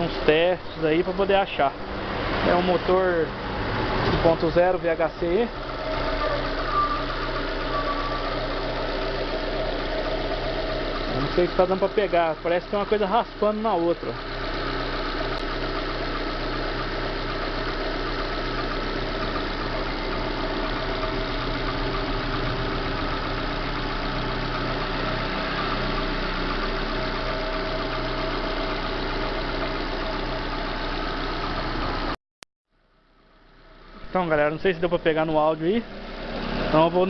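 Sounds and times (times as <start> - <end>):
scraping from engine belt: 0.0 - 29.6
car engine idling: 0.0 - 37.0.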